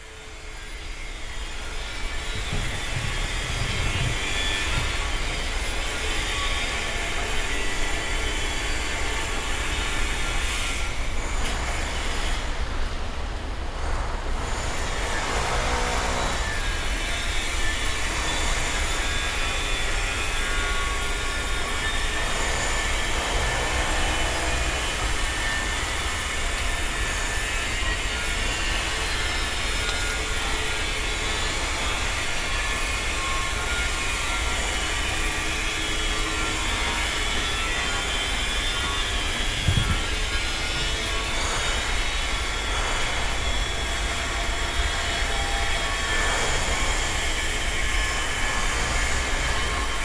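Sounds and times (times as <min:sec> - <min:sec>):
heavy machinery rumble: 0:01.8 - 0:05.9.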